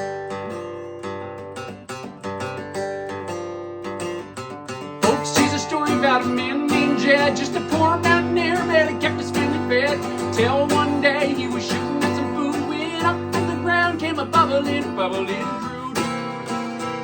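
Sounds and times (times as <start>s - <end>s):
acoustic guitar strumming: 0.0s - 17.0s
person singing: 5.0s - 17.0s.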